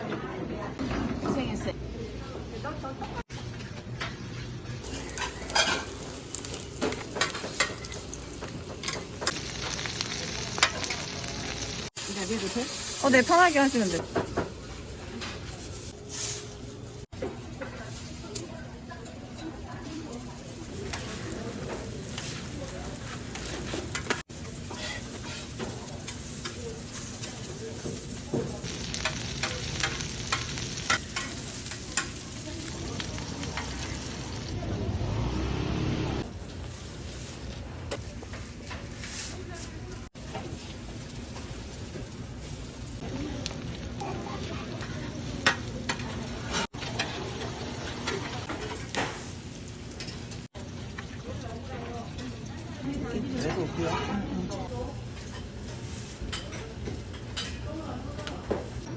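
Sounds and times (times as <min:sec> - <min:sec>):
oil sizzling on a griddle: 0:04.6 - 0:14.3, 0:19.8 - 0:35.2, 0:40.1 - 0:58.9.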